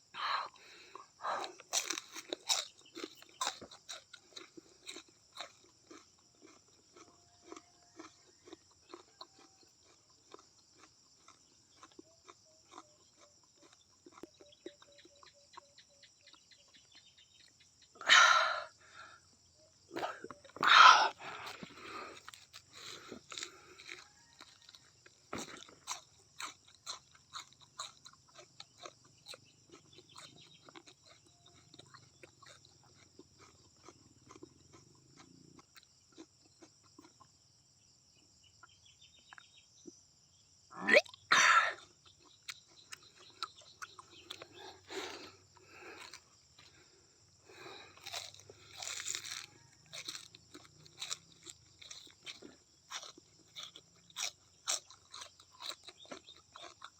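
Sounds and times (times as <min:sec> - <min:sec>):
crunching and chewing: 0:00.0 - 0:56.9.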